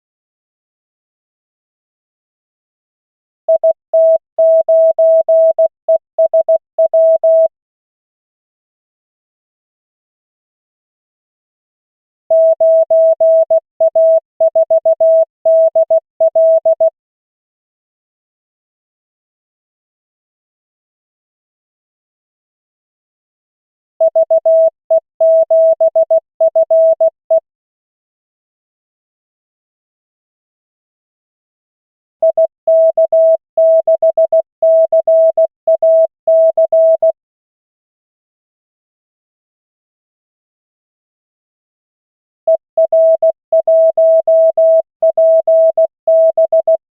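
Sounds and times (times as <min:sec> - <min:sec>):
morse code tone: 0:12.3 - 0:16.9, 0:24.1 - 0:27.4, 0:32.2 - 0:37.2, 0:42.5 - 0:46.8.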